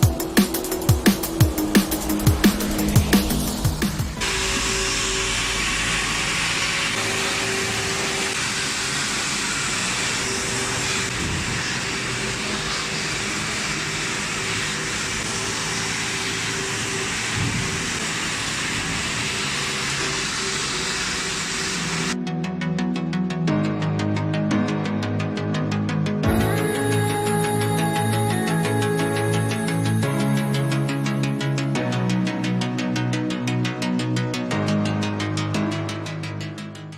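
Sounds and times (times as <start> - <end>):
vacuum cleaner running: 0.0 - 22.2, 26.3 - 31.8.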